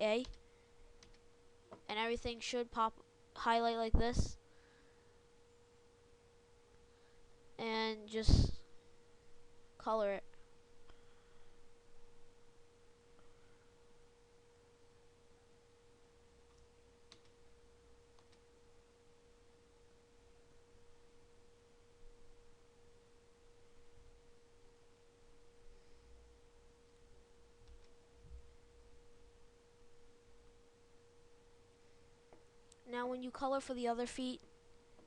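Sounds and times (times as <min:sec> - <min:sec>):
faint steady hum: 0:00.0 - 0:35.0
faint clicks: 0:18.1 - 0:18.4.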